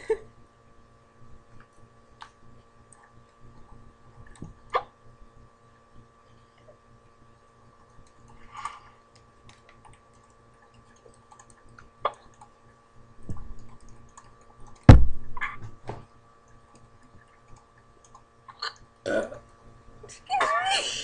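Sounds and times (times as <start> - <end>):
loud low thump: 14.9 - 15.3.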